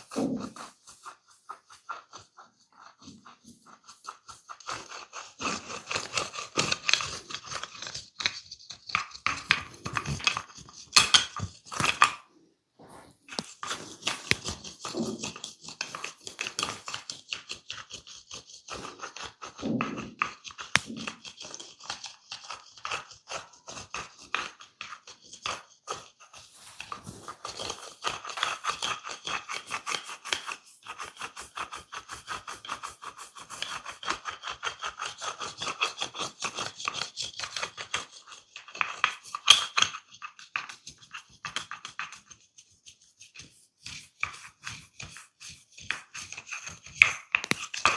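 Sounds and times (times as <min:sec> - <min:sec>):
hands rubbing hair and skin: 0:12.8 - 0:17.2, 0:26.4 - 0:29.8.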